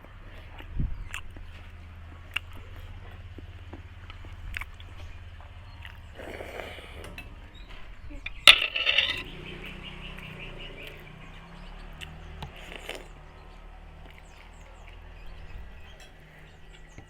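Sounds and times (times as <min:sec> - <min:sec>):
short rattle: 0:07.0 - 0:09.3
eating utensils clicking: 0:08.2 - 0:09.3
sharp metal clink: 0:08.3 - 0:09.3.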